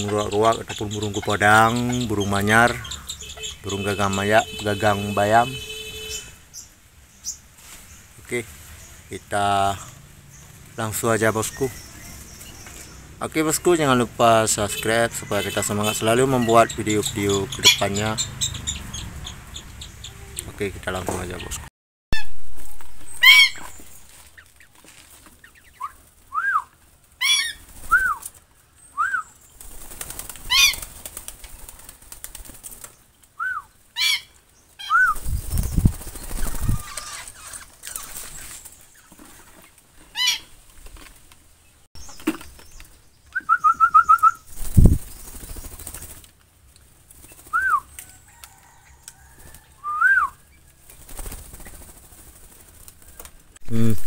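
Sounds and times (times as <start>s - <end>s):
wings flapping: 0.0s - 6.3s, 22.4s - 33.6s, 34.9s - 41.4s, 42.2s - 54.0s
bird trill: 0.0s - 7.4s, 11.2s - 20.4s, 22.2s - 24.7s, 33.4s - 39.1s
birds whistling and chirping: 0.0s - 7.4s, 14.5s - 20.2s, 23.0s - 24.1s, 25.4s - 29.5s, 33.4s - 39.2s, 42.0s - 45.6s, 47.2s - 48.1s, 49.7s - 50.6s.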